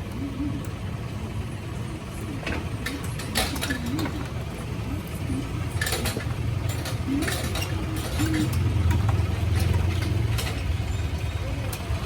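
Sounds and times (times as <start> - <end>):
scooter engine revving: 3.0 - 12.0.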